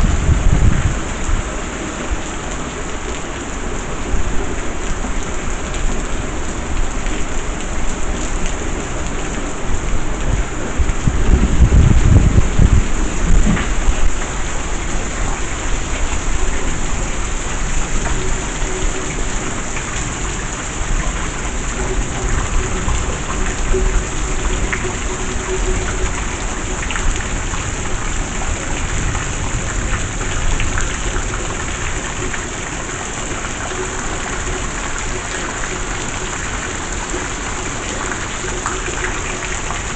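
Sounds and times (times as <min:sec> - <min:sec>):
heavy rain pouring: 0:00.0 - 0:39.9
deep low rumble: 0:10.4 - 0:14.2.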